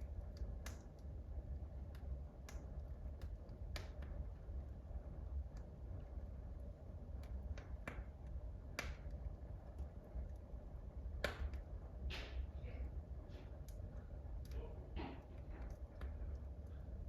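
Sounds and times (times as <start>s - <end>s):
sharp fire pops: 0.0s - 1.2s, 1.8s - 4.5s, 7.1s - 10.4s, 11.0s - 12.6s
low steady hum: 0.0s - 17.0s
wood fire crackling: 0.0s - 17.0s.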